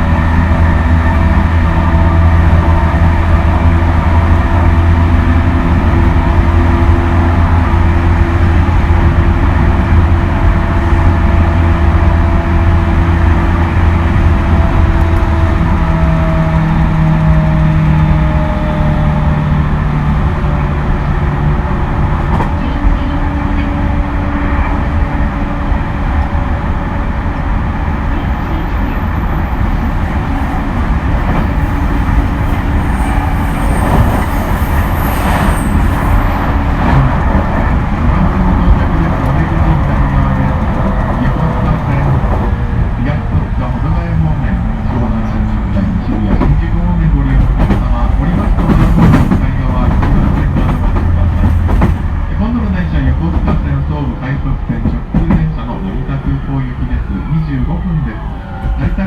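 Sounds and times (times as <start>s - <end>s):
traction motor hum: 0.0s - 53.0s
train wheels rumbling on rails: 0.0s - 59.0s.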